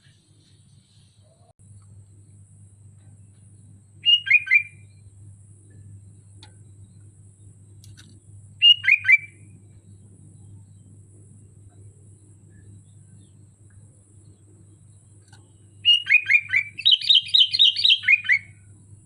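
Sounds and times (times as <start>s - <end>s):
faint low hum: 0.0s - 19.0s
bird whistling song: 4.0s - 5.0s, 8.6s - 9.5s, 15.7s - 18.7s.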